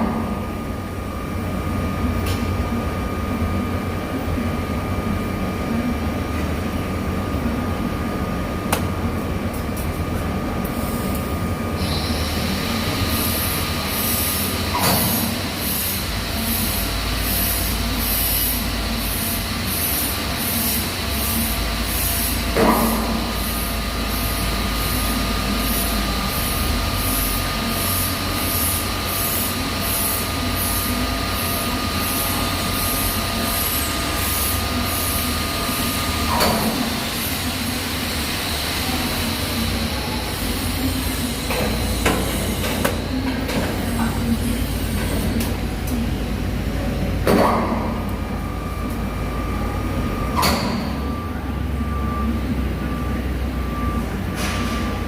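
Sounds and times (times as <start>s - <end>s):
welding arc hissing and whining: 10.6s - 46.6s.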